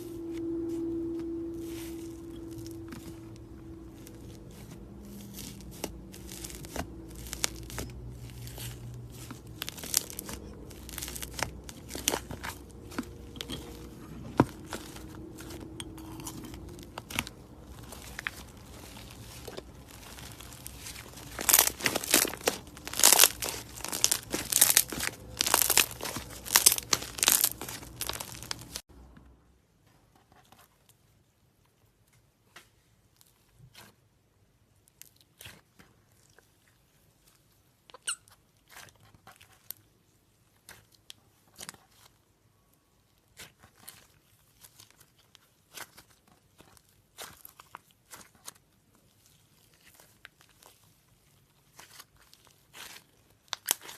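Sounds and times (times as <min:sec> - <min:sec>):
low hum: 0:00.0 - 0:29.4
slime crackling and popping: 0:00.2 - 0:28.8, 0:51.6 - 0:53.9.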